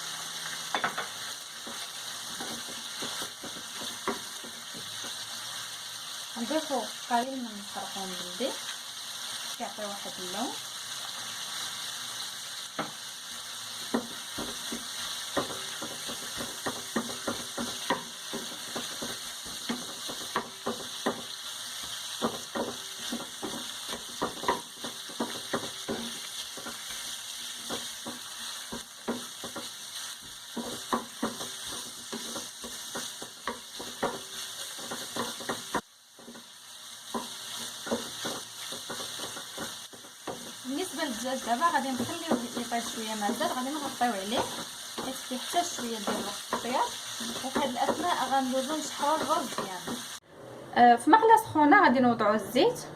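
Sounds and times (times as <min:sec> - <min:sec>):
meat sizzling in oil: 0:00.0 - 0:50.2
utensil scraping against pan: 0:13.9 - 0:36.5, 0:37.1 - 0:50.2.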